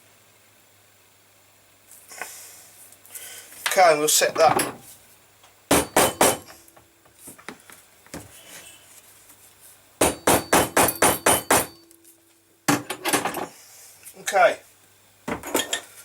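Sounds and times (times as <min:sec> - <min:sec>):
hammer striking metal tool: 0:05.7 - 0:06.6, 0:10.0 - 0:11.9.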